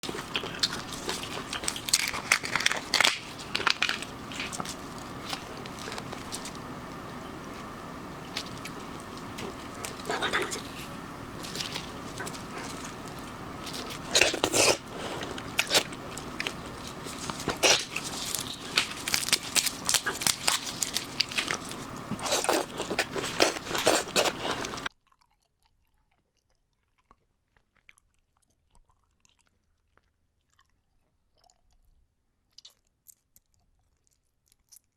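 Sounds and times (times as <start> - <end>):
background hum: 0.0 - 24.9
person chewing crunchy food: 0.0 - 24.9.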